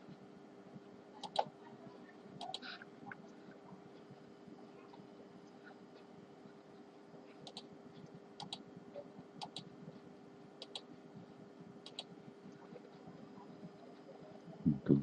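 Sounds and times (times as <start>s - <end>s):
faint steady hum: 0.0s - 15.0s
small sharp clicks in pairs: 8.4s - 8.6s, 9.4s - 9.7s, 10.6s - 10.9s, 11.8s - 12.1s.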